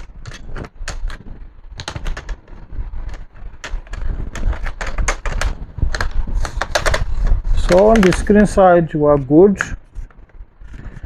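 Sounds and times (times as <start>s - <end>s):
laptop parts clicking: 0.0s - 8.6s.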